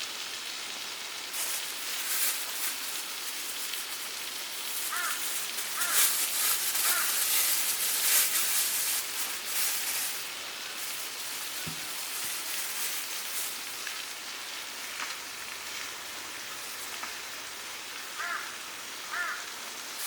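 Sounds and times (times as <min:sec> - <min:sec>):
steady hiss: 0:00.0 - 0:20.0
crow cawing: 0:04.7 - 0:09.0, 0:18.2 - 0:19.5.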